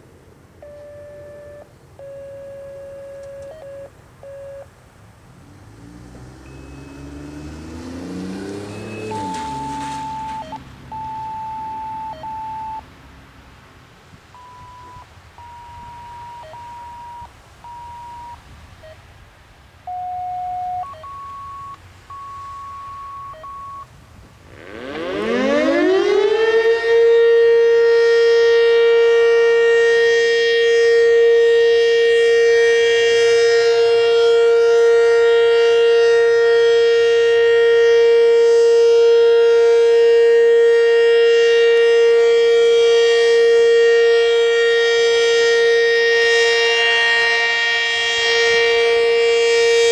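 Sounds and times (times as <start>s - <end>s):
short electronic beeps: 0.6s - 4.7s, 6.4s - 7.6s, 8.2s - 12.8s, 14.4s - 19.0s, 19.9s - 23.9s
warning siren winding up: 0.6s - 4.7s, 5.5s - 12.9s, 14.3s - 19.0s, 19.9s - 23.9s, 24.5s - 49.9s.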